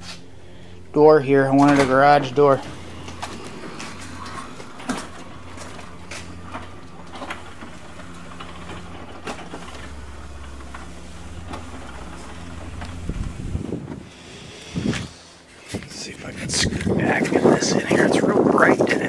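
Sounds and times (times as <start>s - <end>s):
low machine hum: 0.0s - 19.0s.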